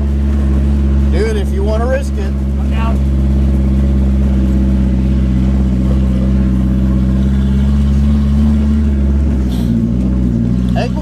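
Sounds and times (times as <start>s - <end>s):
car engine running at low revs: 0.0s - 11.0s.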